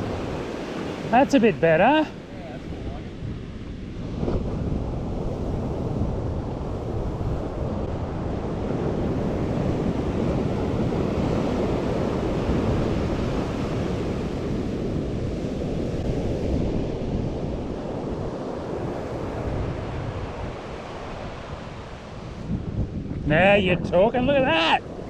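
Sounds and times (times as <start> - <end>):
surf washing onto beach: 0.0 - 25.0
wind buffeting microphone: 0.0 - 25.0.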